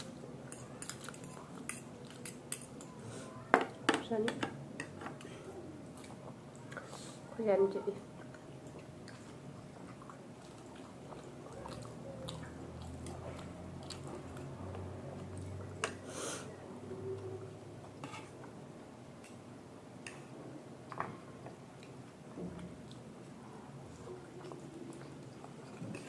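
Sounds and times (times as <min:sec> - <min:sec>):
close chewing food: 0:08.0 - 0:15.8, 0:21.7 - 0:26.0.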